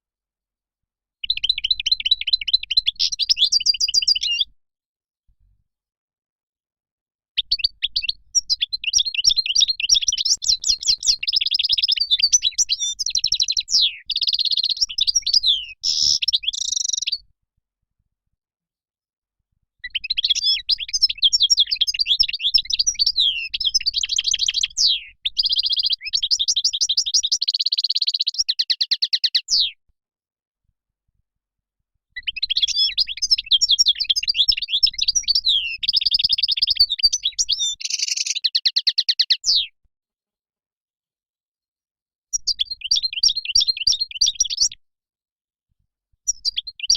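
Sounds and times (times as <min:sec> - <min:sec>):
goldfinch twittering song: 0:01.2 - 0:04.5, 0:07.4 - 0:17.2, 0:19.8 - 0:29.7, 0:32.2 - 0:39.6, 0:42.4 - 0:44.8.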